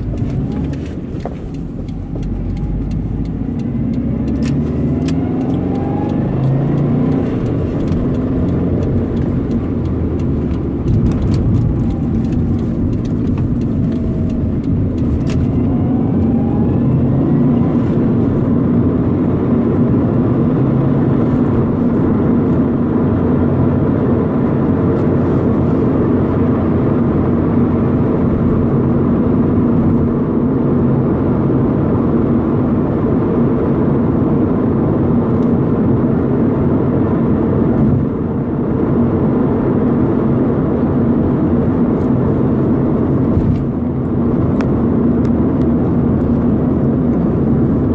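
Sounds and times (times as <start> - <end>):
faint ticks: 0.0 - 15.5
car engine running: 0.0 - 47.9.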